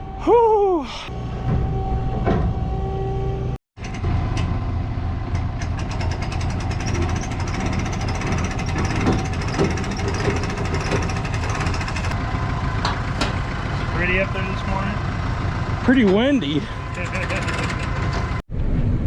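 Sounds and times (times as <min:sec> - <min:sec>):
engine idling: 0:03.8 - 0:18.4.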